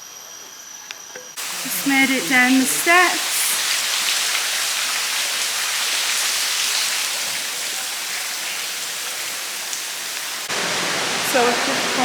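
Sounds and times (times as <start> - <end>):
waterfall rushing: 1.4 - 5.1, 10.4 - 12.0.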